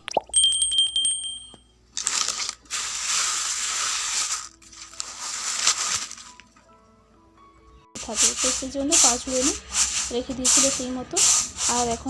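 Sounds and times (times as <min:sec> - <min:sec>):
rice rattling on a bamboo tray: 0:08.0 - 0:12.0.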